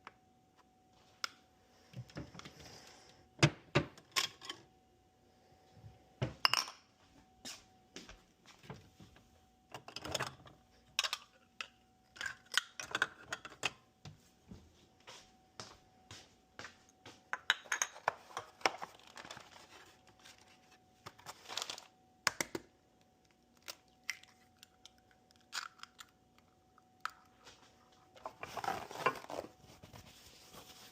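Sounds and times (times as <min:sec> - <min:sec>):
faint steady tone: 0:00.0 - 0:03.4
rustling and scraping: 0:27.4 - 0:30.9.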